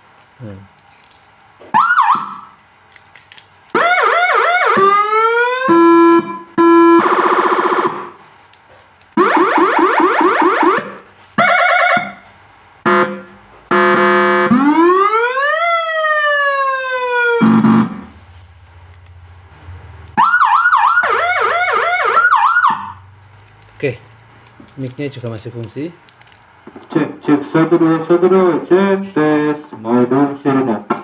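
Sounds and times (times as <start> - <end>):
electronic siren tones: 1.7 - 2.5, 3.8 - 8.2, 9.2 - 18.2, 20.1 - 23.1.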